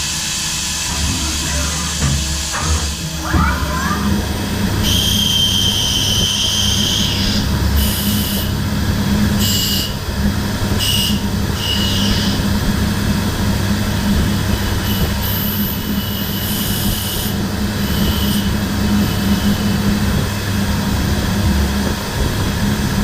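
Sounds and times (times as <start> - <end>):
machine humming: 0.0 - 15.0
high-pitched cutting tool squeals: 4.8 - 7.4.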